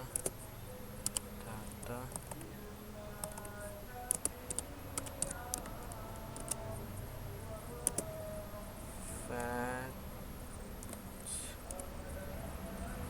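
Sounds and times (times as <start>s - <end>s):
computer keyboard typing: 0.0s - 0.4s, 1.0s - 2.5s, 3.2s - 6.8s, 7.8s - 8.2s, 10.8s - 11.9s.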